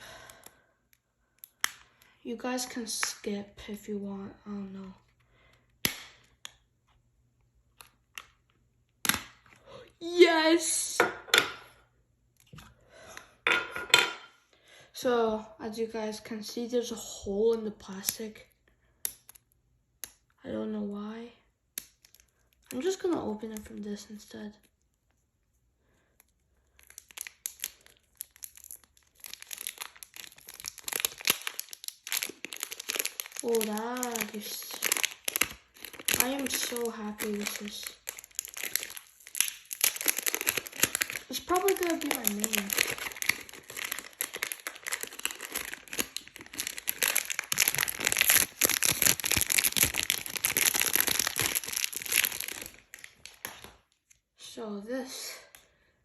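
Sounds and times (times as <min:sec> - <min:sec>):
plastic packaging tearing and crinkling: 0:26.7 - 0:53.8.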